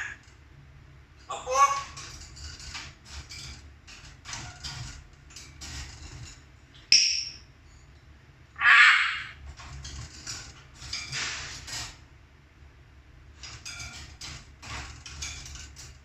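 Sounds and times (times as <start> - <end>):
birds squawking: 8.6 - 9.4.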